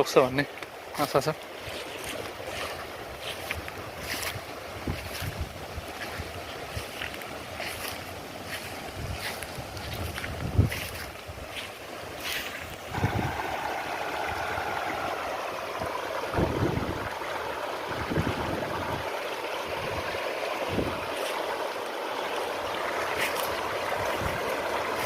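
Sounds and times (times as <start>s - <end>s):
flooded river rushing: 0.0s - 25.0s.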